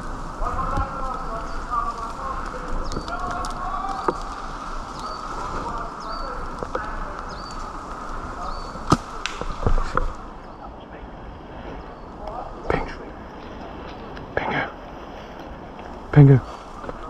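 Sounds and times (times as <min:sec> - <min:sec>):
sharp cracks: 0:00.0 - 0:10.4
bird chirping: 0:00.0 - 0:14.8.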